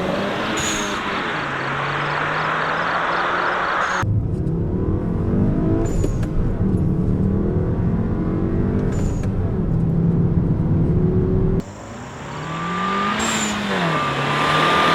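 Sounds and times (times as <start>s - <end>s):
hissy engine recording: 0.0s - 4.0s, 11.6s - 14.9s
car exhaust accelerating: 0.0s - 14.9s
turbo whistle at shifts: 11.7s - 14.9s.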